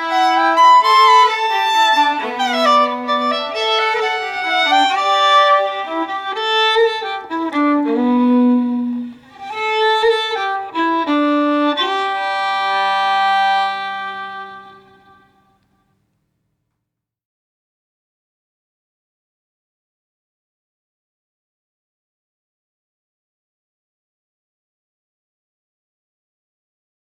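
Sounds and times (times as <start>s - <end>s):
fiddle playing a melody: 0.0s - 15.6s.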